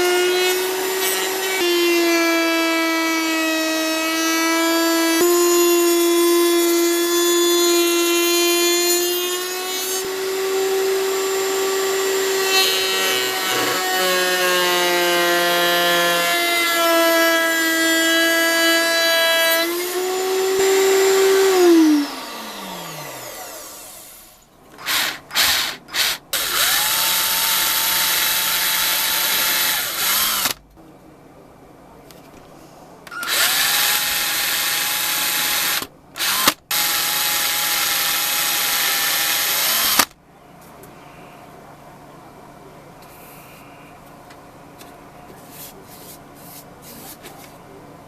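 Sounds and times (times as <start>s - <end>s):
power tool motor whining: 9.4s - 17.2s, 19.4s - 30.6s, 33.1s - 40.1s.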